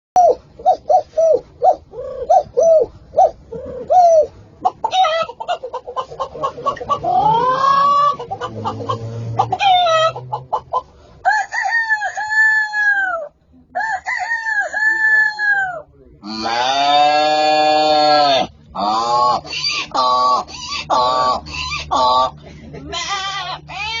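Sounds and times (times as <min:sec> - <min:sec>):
man imitating chicken clucks: 0:00.2 - 0:10.9, 0:11.7 - 0:24.0
man imitating rooster crows: 0:07.1 - 0:08.2, 0:11.2 - 0:22.3.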